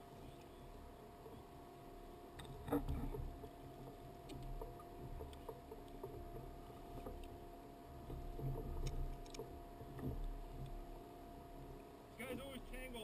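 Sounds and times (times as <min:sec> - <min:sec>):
water against kayak hull: 0:00.0 - 0:13.0
faint clicks: 0:02.3 - 0:07.4, 0:08.0 - 0:10.9.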